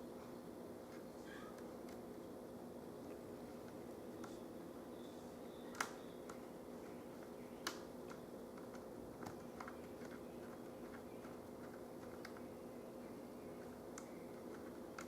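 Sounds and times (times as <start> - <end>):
steady low hum: 0.0 - 15.0
sharp clicks: 5.7 - 6.4.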